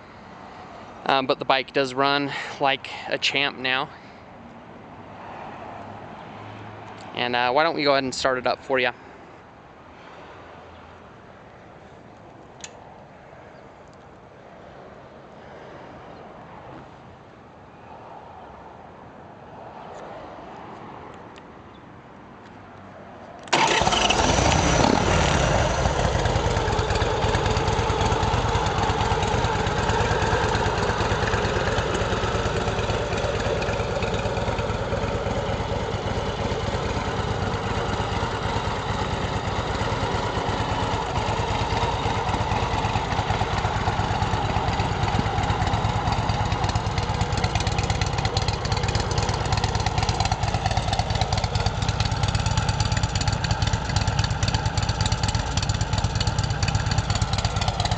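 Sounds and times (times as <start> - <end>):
motorcycle engine starting and idling: 23.4 - 57.9.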